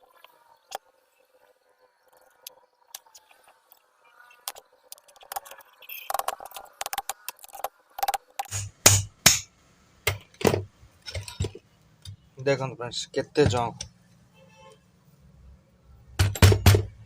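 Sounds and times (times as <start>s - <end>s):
metal tools clinking and knocking: 10.1s - 12.2s, 16.2s - 17.0s.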